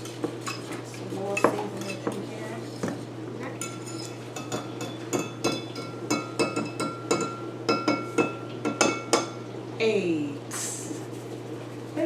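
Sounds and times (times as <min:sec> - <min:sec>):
whisk clinking in a bowl: 0:00.4 - 0:00.8, 0:03.6 - 0:09.4.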